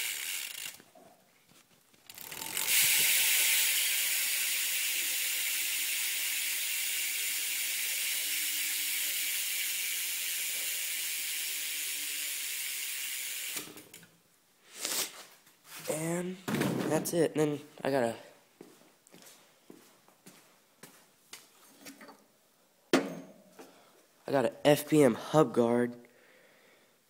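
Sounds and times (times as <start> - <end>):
bicycle hub ratchet clicking: 0.0 - 0.8, 2.1 - 14.0.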